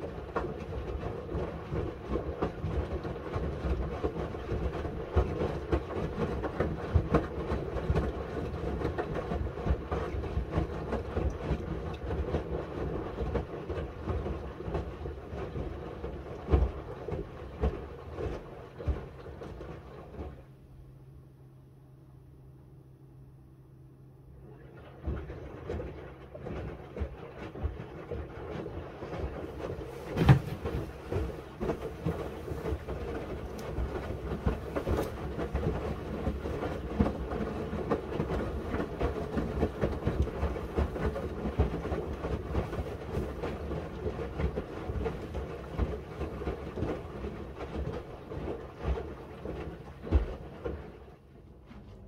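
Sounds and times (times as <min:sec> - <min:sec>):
washing machine drum rumbling: 0:00.0 - 0:20.4, 0:24.3 - 0:52.0
laundry knocking in drum: 0:29.2 - 0:43.7.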